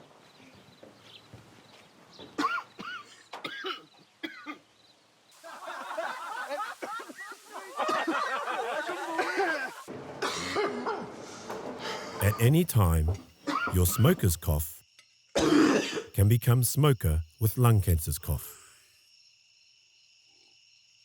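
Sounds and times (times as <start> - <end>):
person coughing: 10.2 - 10.9, 13.5 - 13.9, 15.4 - 16.1
throat clearing: 15.4 - 16.1.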